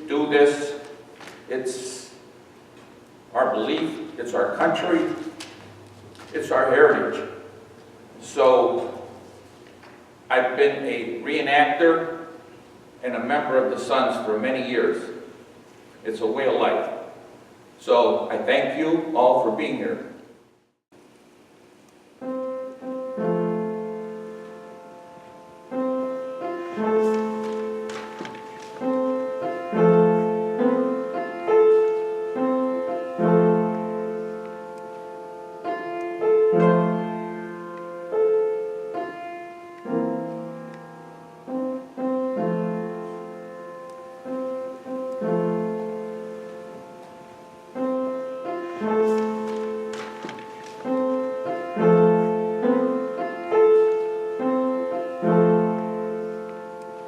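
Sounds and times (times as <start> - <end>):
slow piano music: 22.1 - 57.0.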